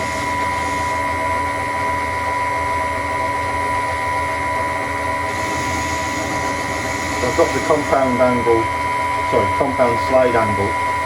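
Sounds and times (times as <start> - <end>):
metal lathe running: 4.3 - 11.0.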